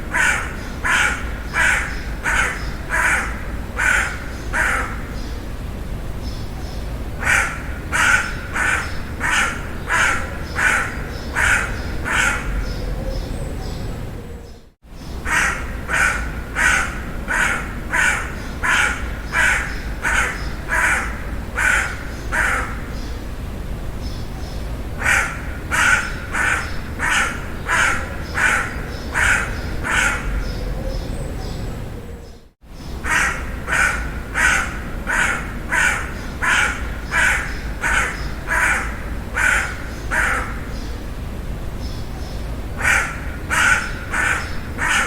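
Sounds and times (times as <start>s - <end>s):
crow cawing: 0.0s - 5.2s, 7.2s - 12.7s, 15.2s - 23.0s, 25.0s - 30.6s, 33.0s - 40.9s, 42.8s - 45.0s.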